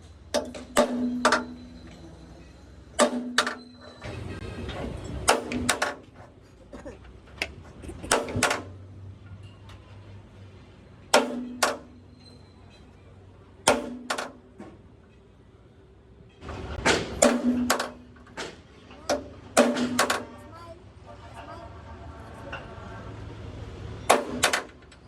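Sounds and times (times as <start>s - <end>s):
hammer blows on metal: 0.3s - 1.9s, 3.0s - 4.1s, 11.1s - 12.2s, 17.0s - 18.2s.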